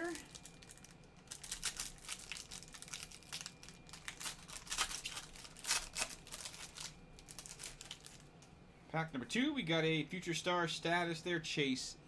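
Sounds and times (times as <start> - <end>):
wrapper tearing and crinkling: 0.0 - 8.3.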